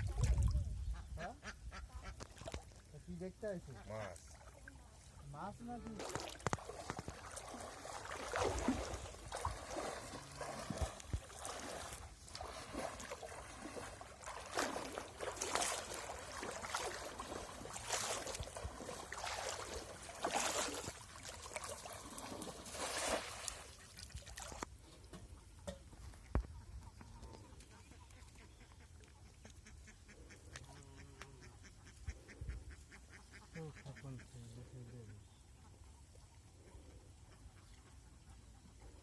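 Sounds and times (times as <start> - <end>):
water sloshing and splashing: 0.0 - 0.7, 2.0 - 26.5
water trickling: 4.1 - 24.7.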